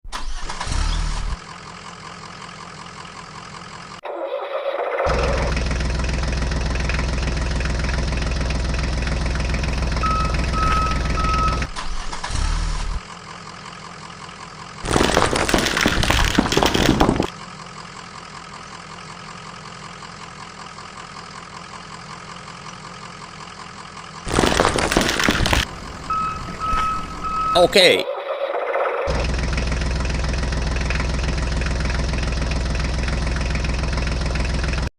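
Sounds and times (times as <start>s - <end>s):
diesel engine running: 0.0s - 34.9s
short beeps: 10.0s - 11.7s, 26.1s - 28.0s.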